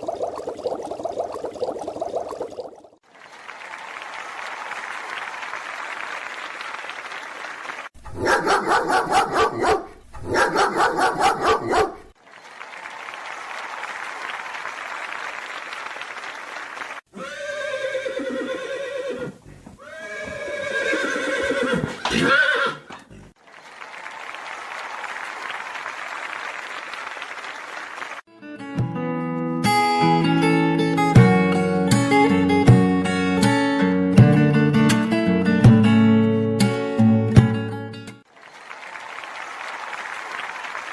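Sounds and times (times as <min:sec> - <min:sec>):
rapid barking-like calls: 0:08.0 - 0:12.2
horse whinnying: 0:17.2 - 0:23.0.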